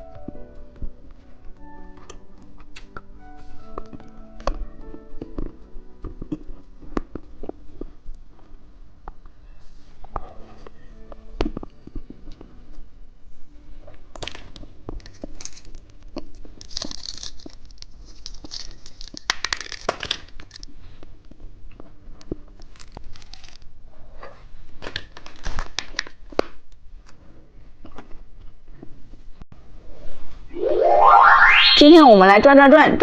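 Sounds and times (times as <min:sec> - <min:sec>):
candy wrapper tearing and crinkling: 0:15.0 - 0:20.7, 0:22.6 - 0:23.7, 0:24.8 - 0:26.5.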